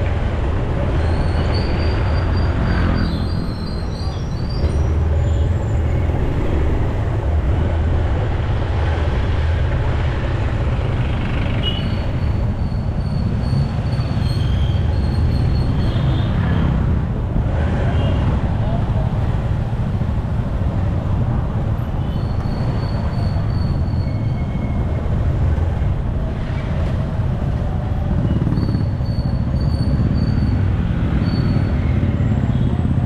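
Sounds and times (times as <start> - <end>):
vehicle engine and road rumble: 0.0 - 33.0.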